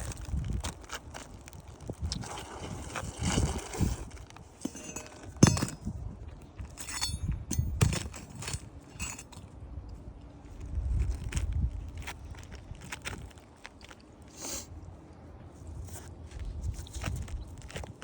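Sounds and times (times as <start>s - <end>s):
shingles being handled: 0.0s - 9.5s.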